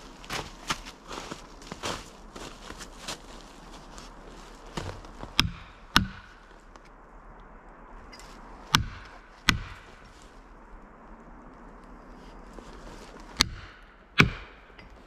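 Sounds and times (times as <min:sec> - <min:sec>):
hammer striking felling wedge: 0:04.8 - 0:06.5, 0:08.2 - 0:10.2, 0:13.3 - 0:15.0.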